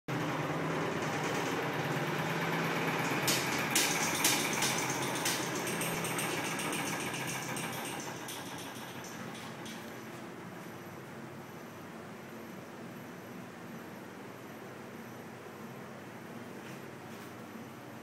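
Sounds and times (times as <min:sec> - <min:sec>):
washing machine humming: 0:00.1 - 0:13.6
sharp clicks or knocks: 0:03.0 - 0:10.0.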